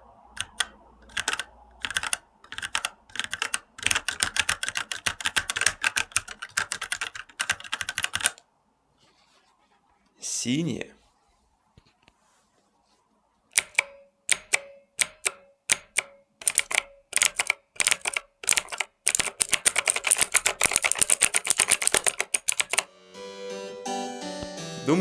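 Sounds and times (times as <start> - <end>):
rapid typing: 0.3 - 8.4, 13.5 - 22.9
mechanical keyboard clicking: 0.4 - 8.4, 13.5 - 22.9
music: 22.8 - 25.0.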